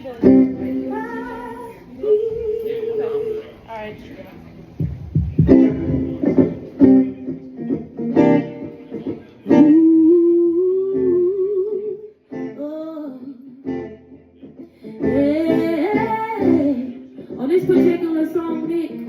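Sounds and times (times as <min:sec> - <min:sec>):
guitar playing: 0:00.0 - 0:19.0
person singing: 0:00.2 - 0:03.5, 0:09.5 - 0:13.8, 0:14.7 - 0:19.0.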